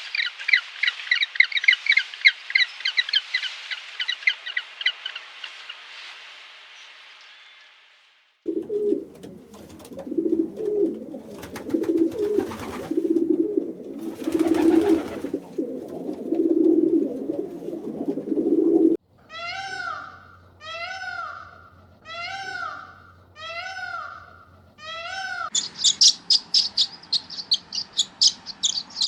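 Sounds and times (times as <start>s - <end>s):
pigeons cooing: 8.5s - 19.0s, 19.6s - 25.5s
cat meowing: 22.0s - 25.5s.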